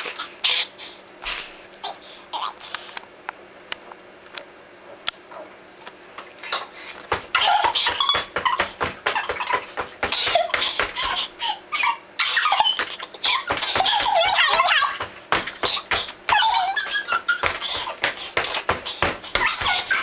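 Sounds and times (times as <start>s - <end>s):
high-pitched children giggling: 7.4s - 15.1s, 15.7s - 18.0s.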